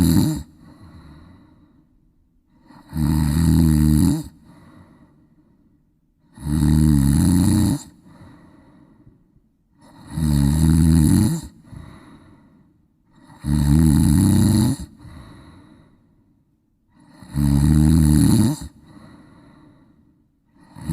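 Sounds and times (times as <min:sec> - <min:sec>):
person snoring loudly: 0:00.0 - 0:01.3, 0:02.6 - 0:04.6, 0:06.3 - 0:08.3, 0:09.8 - 0:12.0, 0:13.2 - 0:15.4, 0:17.0 - 0:19.1, 0:20.6 - 0:20.9
faint breath out: 0:00.0 - 0:02.9, 0:04.4 - 0:05.8, 0:08.0 - 0:09.3, 0:11.6 - 0:13.3, 0:14.9 - 0:16.4, 0:18.7 - 0:20.3.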